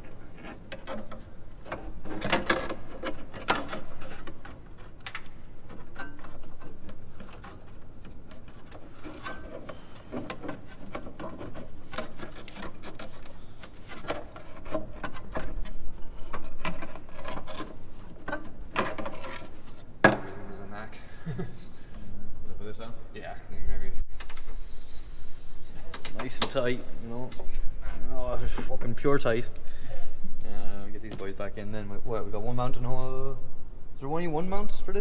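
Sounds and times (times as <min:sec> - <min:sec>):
plastic rubbing and scraping: 0:00.0 - 0:20.0.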